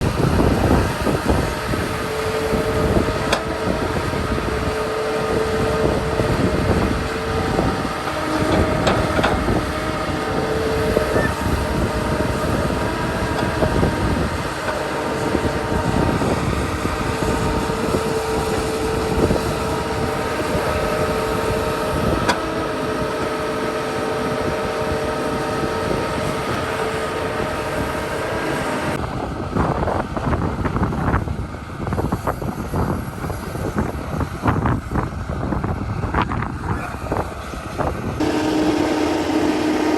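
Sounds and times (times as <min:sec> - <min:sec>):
diesel engines whining: 0:00.0 - 0:39.9
machinery clanks: 0:00.6 - 0:23.6.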